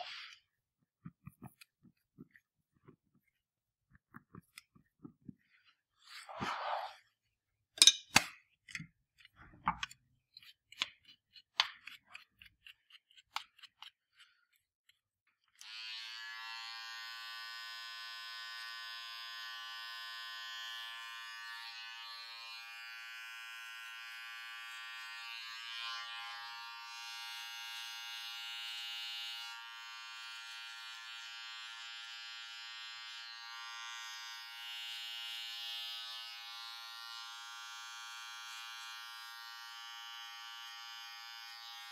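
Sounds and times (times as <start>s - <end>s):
electric device buzzing: 15.6s - 41.9s.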